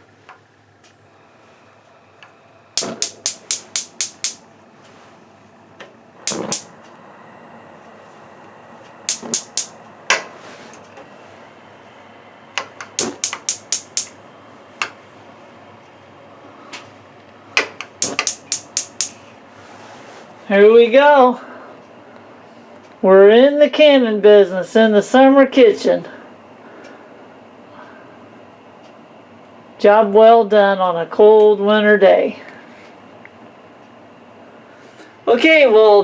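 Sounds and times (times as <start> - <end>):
gas range igniter clicking: 2.8 - 4.4, 6.2 - 6.8, 9.0 - 10.2, 12.6 - 14.2, 17.6 - 19.2.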